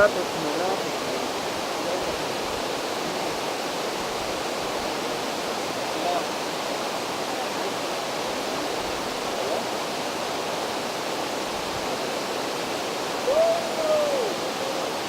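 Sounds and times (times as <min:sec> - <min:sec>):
flowing water rushing: 0:00.0 - 0:15.0
rising and falling call: 0:13.2 - 0:15.0.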